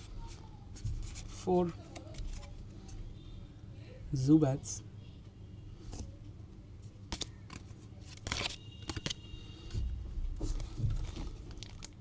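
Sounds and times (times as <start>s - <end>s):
trading cards rustling: 7.1s - 9.3s, 10.4s - 12.0s.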